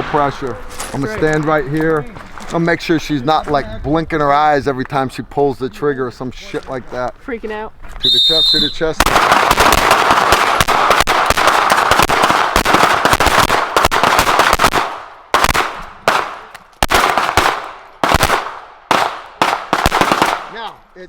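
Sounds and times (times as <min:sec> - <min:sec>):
pistol shots with echo: 0:09.0 - 0:20.7.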